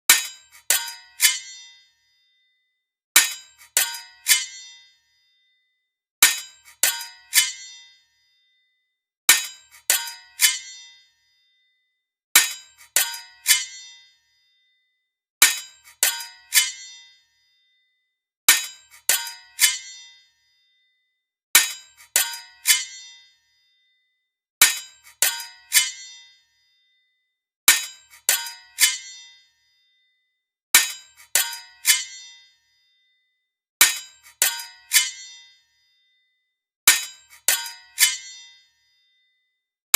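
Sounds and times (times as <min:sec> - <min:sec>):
sword blades clashing: 0:00.1 - 0:01.8, 0:03.2 - 0:04.9, 0:06.2 - 0:07.9, 0:09.3 - 0:11.0, 0:12.4 - 0:14.0, 0:15.4 - 0:17.0, 0:18.5 - 0:20.1, 0:21.6 - 0:23.2, 0:24.6 - 0:26.2, 0:27.7 - 0:29.4, 0:30.8 - 0:32.4, 0:33.8 - 0:35.5, 0:36.9 - 0:38.6.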